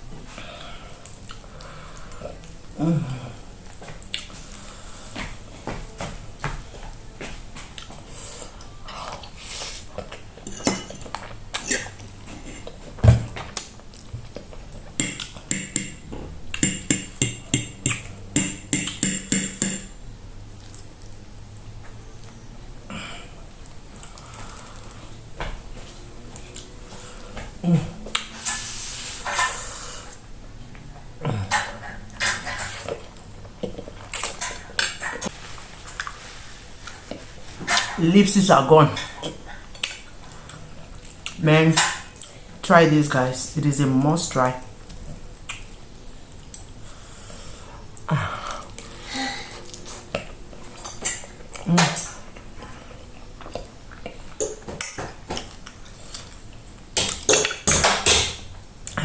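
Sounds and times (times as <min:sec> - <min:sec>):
person eating: 0:00.3 - 0:05.5, 0:07.7 - 0:19.1, 0:45.1 - 0:57.6
breathy sniff: 0:08.0 - 0:09.9, 0:28.4 - 0:30.2
cutlery clatter: 0:10.4 - 0:11.8, 0:31.5 - 0:33.0, 0:34.2 - 0:35.3
cutlery scraping a plate: 0:10.4 - 0:11.8, 0:28.2 - 0:29.7, 0:31.5 - 0:33.0.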